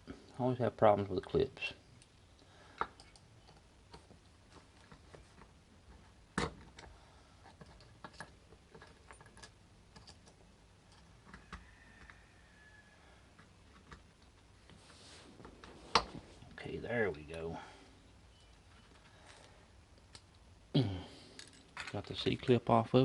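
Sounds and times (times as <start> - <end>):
faint scrape: 14.8 - 15.9.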